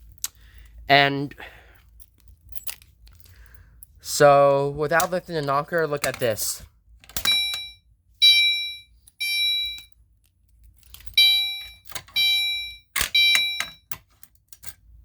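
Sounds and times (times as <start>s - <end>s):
fire alarm horn honks: 7.3s - 9.9s, 11.2s - 13.8s.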